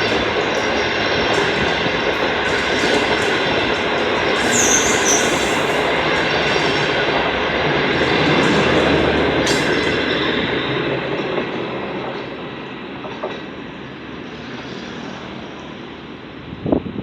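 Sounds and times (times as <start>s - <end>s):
train wheels on rails: 0.0s - 16.6s
high wheel squeal: 4.0s - 6.9s.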